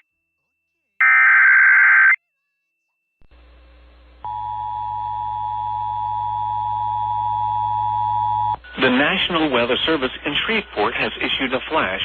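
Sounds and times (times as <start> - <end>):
low electrical hum: 3.2 - 12.0.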